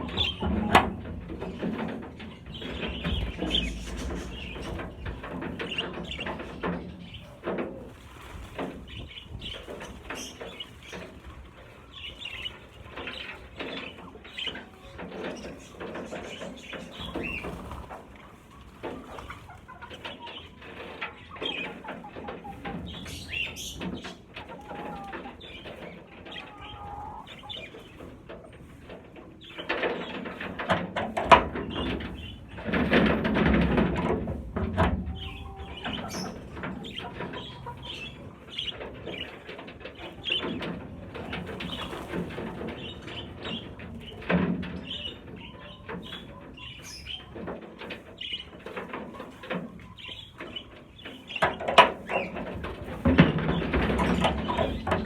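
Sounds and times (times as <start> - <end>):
wings flapping: 0.0 - 21.9, 29.4 - 55.0
birds scuffling: 0.0 - 55.0
budgerigars chirping: 2.4 - 7.2, 35.2 - 39.4.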